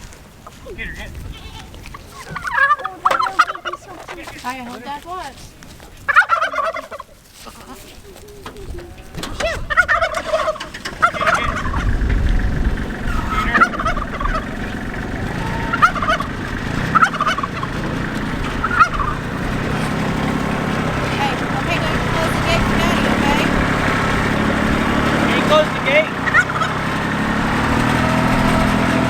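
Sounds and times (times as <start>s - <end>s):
warbling farm animal calls: 0.5s - 5.2s, 5.8s - 29.0s
tractor diesel engine: 8.0s - 29.0s.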